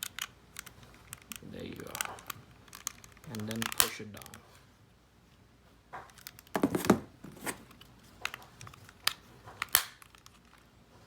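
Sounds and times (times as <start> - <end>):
sharp plastic clicks: 0.0 - 4.4, 8.2 - 10.6
plastic headphones rustling: 0.0 - 4.7, 6.1 - 11.0.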